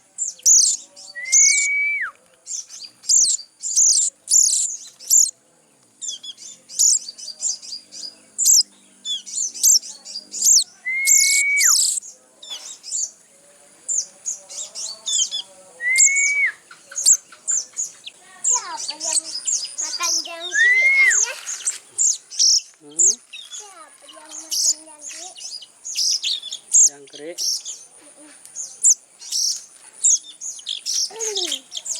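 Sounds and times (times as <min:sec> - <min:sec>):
chicks chirping: 0:02.5 - 0:05.3, 0:13.9 - 0:31.9.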